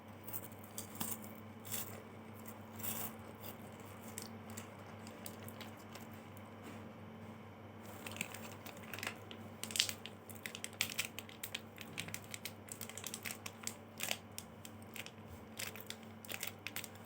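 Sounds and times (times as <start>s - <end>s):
chewing crunchy wafer bar: 8.0s - 17.0s.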